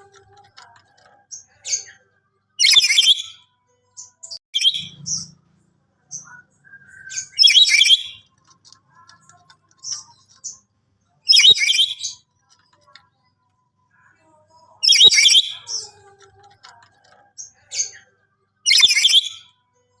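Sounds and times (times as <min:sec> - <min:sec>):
parrot screeching: 0:14.8 - 0:15.6.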